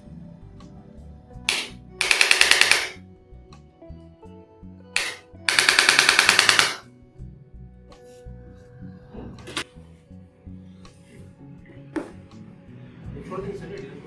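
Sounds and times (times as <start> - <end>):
soft background music: 0.0 - 14.0.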